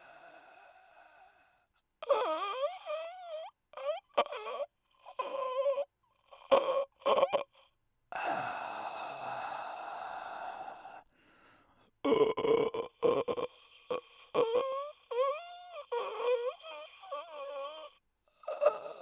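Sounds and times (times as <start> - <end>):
man imitating snoring: 12.1 - 19.0.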